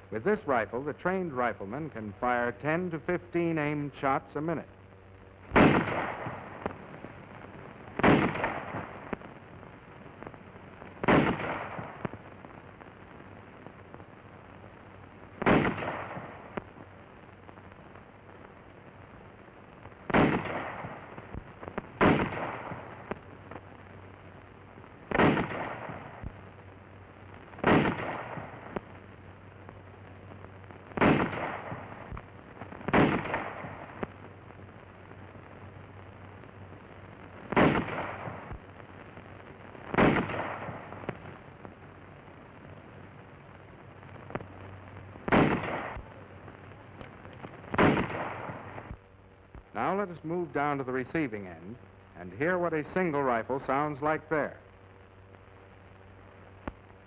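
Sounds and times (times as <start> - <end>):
rifle shots with echo: 5.5 - 9.4, 11.0 - 12.2, 15.4 - 16.7, 20.1 - 23.2, 25.1 - 26.4, 27.6 - 28.9, 30.9 - 32.2, 32.8 - 34.1, 37.5 - 38.6, 39.8 - 41.5, 44.3 - 49.0.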